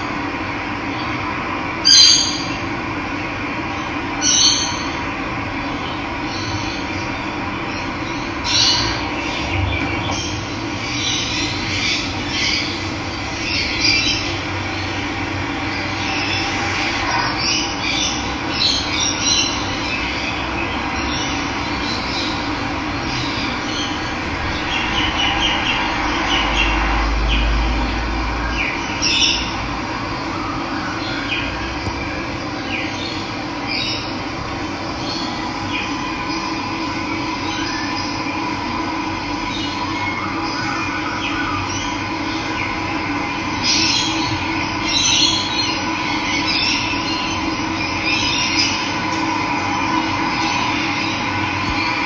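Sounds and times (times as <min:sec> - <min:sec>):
birds chirping: 0:01.9 - 0:02.7, 0:05.7 - 0:27.9, 0:28.5 - 0:38.6.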